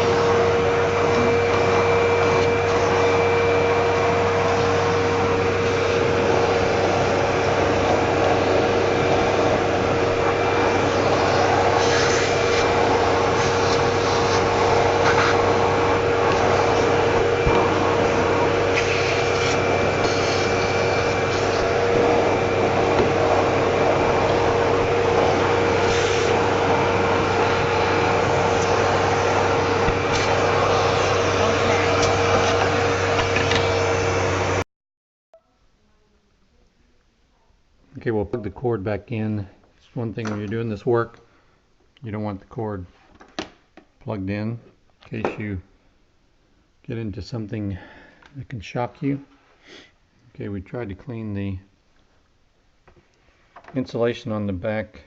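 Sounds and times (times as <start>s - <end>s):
vacuum cleaner humming: 0.0s - 34.6s
brush rubbing and scraping: 10.2s - 32.8s.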